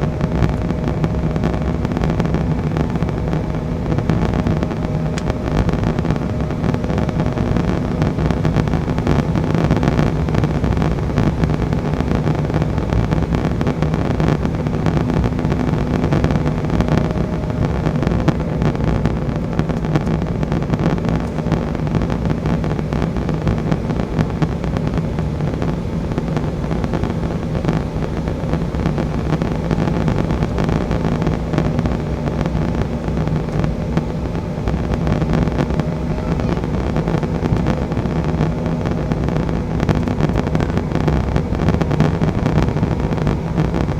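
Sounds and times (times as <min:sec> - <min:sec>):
jet engine and airflow rush: 0:00.0 - 0:43.9
low hum: 0:00.0 - 0:43.9.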